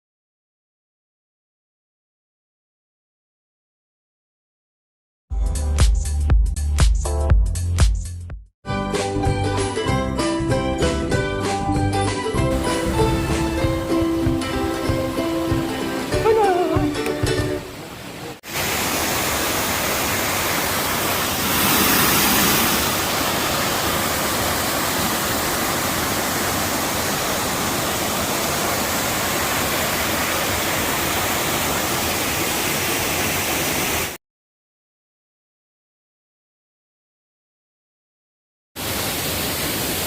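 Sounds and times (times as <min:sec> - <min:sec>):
ukulele music: 0:08.9 - 0:17.7
waterfall rushing: 0:12.5 - 0:34.2, 0:38.8 - 0:40.0.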